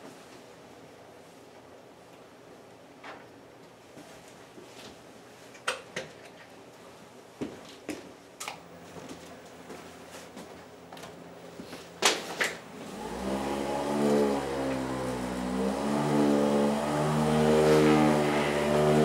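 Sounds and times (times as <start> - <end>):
electric massager motor humming: 12.8 - 19.0.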